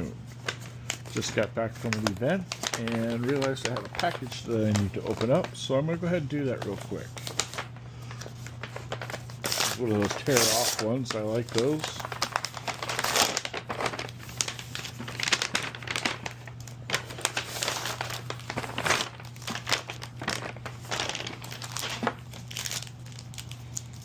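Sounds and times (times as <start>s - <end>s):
steady low hum: 0.0s - 24.0s
packaging crinkling: 0.3s - 24.0s
package being torn open: 8.9s - 24.0s.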